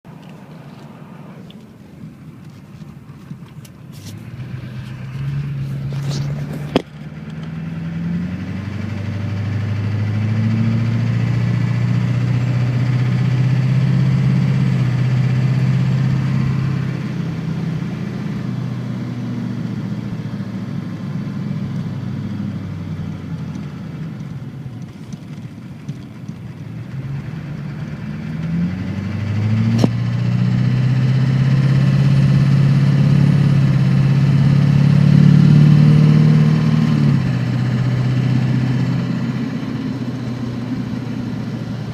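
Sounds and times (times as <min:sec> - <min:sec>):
car engine drone accelerating: 0:00.1 - 0:41.9.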